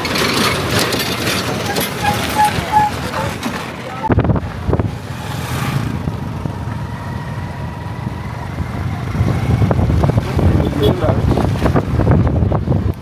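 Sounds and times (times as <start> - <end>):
vehicle engine rumbling: 0.0 - 13.0
faint engine whine: 3.3 - 10.5.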